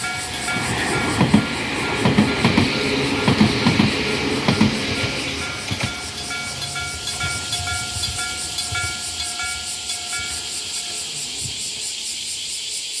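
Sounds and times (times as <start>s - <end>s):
steady high hiss: 0.0s - 13.0s
level crossing bell ringing: 5.4s - 11.3s.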